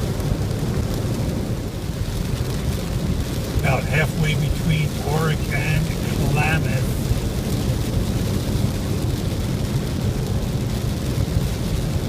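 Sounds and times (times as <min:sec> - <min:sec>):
car cabin road rumble: 0:00.0 - 0:12.0
faint hiss: 0:03.6 - 0:07.2.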